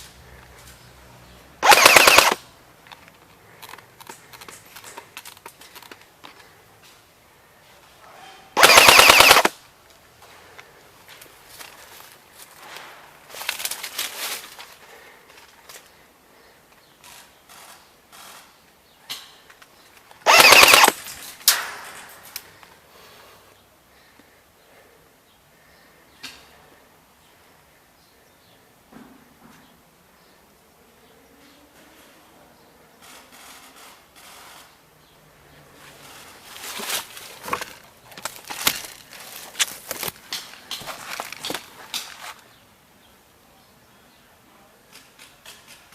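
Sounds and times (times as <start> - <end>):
airsoft rifle full-auto burst: 1.6 - 2.4, 8.6 - 9.6, 20.2 - 21.0
sharp clicks: 1.6 - 6.4, 8.6 - 9.6, 20.0 - 21.7
footsteps crunching through undergrowth: 11.1 - 14.8, 36.0 - 42.5.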